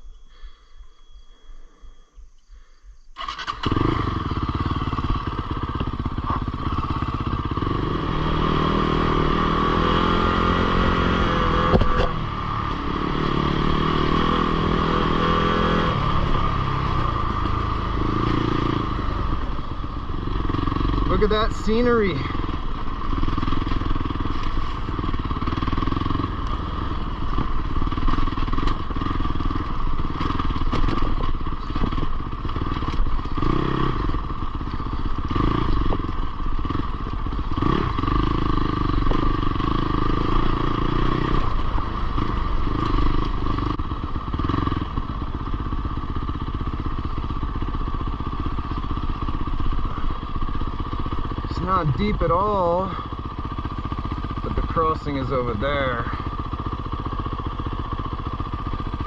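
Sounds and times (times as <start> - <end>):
motorcycle engine revving: 2.6 - 59.0.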